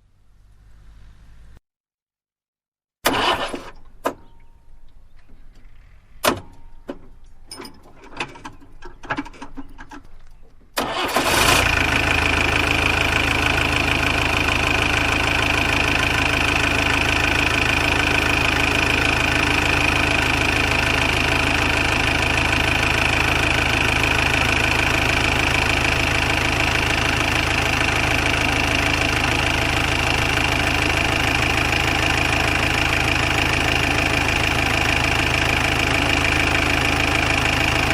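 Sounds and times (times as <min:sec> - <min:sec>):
car engine starting and idling: 0:03.1 - 0:37.9.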